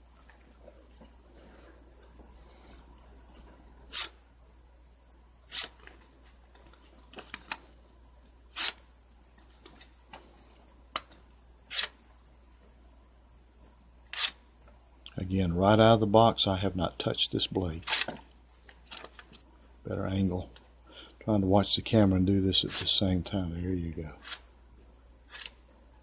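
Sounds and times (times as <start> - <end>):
knife slicing paper: 3.9 - 4.2, 5.5 - 5.8, 8.5 - 8.8, 11.7 - 12.0, 14.1 - 14.4, 25.3 - 25.6.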